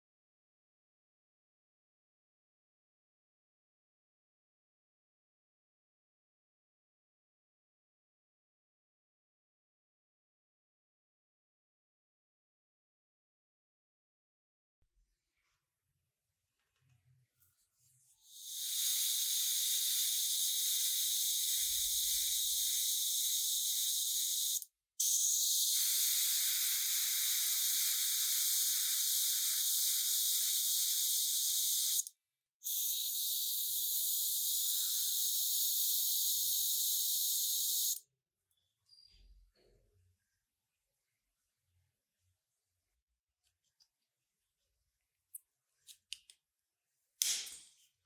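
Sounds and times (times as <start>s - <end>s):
pressurised spray hissing: 18.3s - 38.0s.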